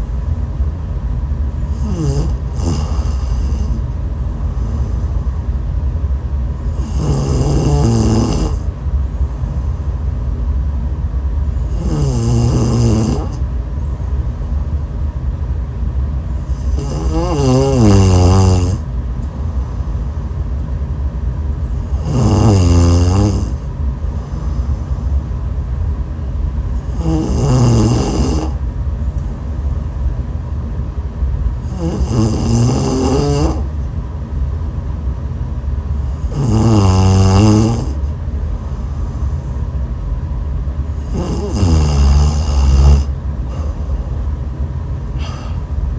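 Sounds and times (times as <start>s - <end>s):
steady low hum: 0.0s - 45.9s
woman snoring: 1.7s - 3.8s, 6.7s - 8.7s, 11.6s - 13.4s, 16.5s - 18.8s, 21.8s - 23.6s, 26.8s - 28.6s, 31.6s - 33.7s, 36.0s - 38.0s, 40.9s - 43.9s, 45.2s - 45.6s.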